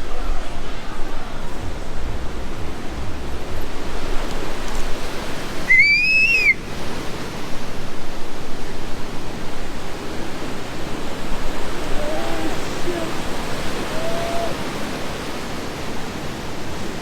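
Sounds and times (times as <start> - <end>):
heavy storm surf: 0.0 - 17.0
wind: 0.0 - 17.0
rising and falling whistle: 5.7 - 6.6.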